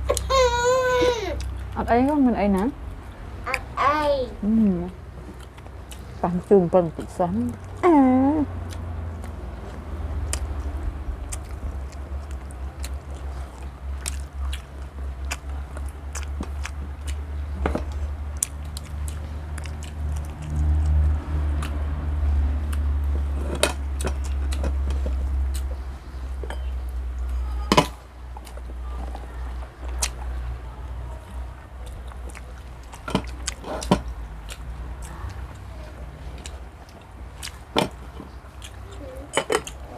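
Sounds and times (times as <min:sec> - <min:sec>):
chewing: 0:05.2 - 0:07.8, 0:08.6 - 0:22.0, 0:22.6 - 0:27.4, 0:28.3 - 0:39.9
low rumble: 0:06.3 - 0:14.4.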